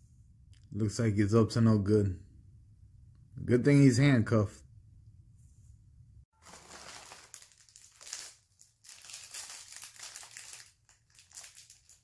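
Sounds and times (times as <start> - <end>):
plastic packaging crinkling: 6.4 - 12.0.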